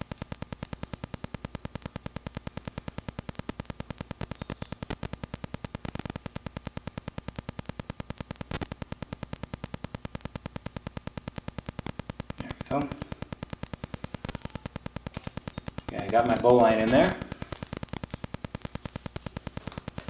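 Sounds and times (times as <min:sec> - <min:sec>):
electrical buzz of rapid clicks: 0:00.0 - 0:20.0.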